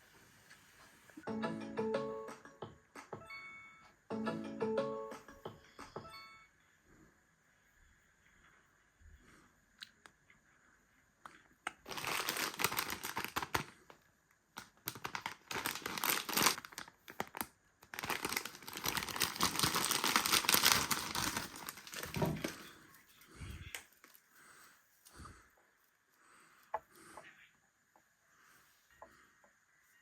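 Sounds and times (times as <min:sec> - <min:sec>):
packaging crinkling: 0:11.8 - 0:14.0, 0:14.6 - 0:22.8.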